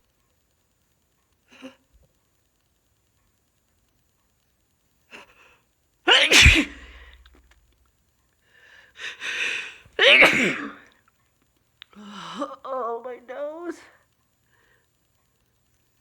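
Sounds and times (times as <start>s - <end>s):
person sneezing: 6.1s - 7.3s, 10.0s - 10.8s.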